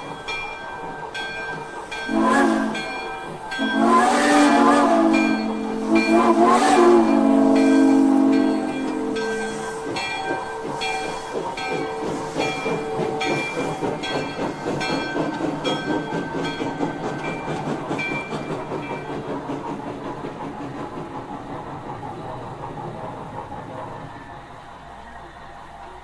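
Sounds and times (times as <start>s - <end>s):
steam locomotive chuffing: 0.0s - 26.0s
train whistle: 2.1s - 11.4s.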